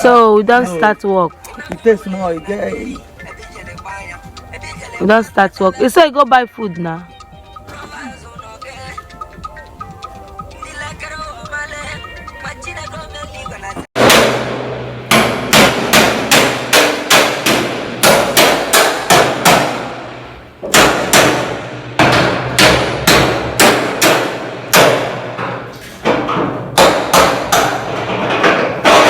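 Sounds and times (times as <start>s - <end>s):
hammer blows ringing: 7.6s - 29.0s.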